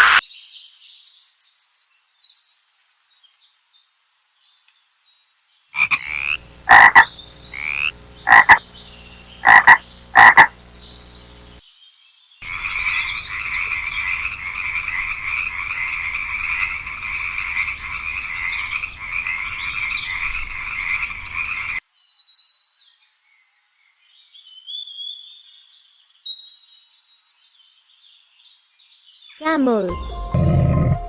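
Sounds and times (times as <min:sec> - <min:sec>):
faint high frog calls: 0:05.8 - 0:10.6, 0:12.4 - 0:21.8
frog chorus: 0:05.8 - 0:11.6, 0:12.4 - 0:21.8
frogs croaking: 0:05.8 - 0:11.6, 0:12.4 - 0:21.8.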